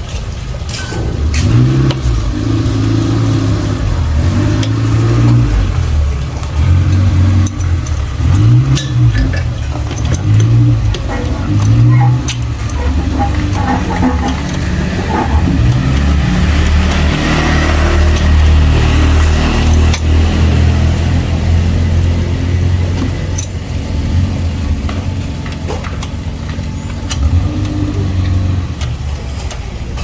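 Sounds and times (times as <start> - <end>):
scooter engine humming: 2.0 - 23.3.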